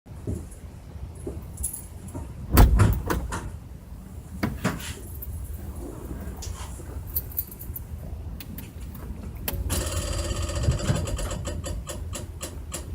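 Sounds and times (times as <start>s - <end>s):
knocks and clunks: 2.1s - 3.6s.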